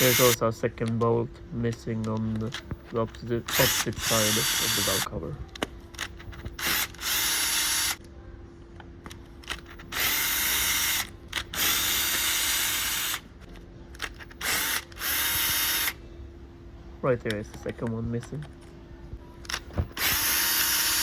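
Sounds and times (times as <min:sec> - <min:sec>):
power driver whirring: 0:00.0 - 0:01.1, 0:01.7 - 0:08.0, 0:09.0 - 0:16.0, 0:19.4 - 0:21.0.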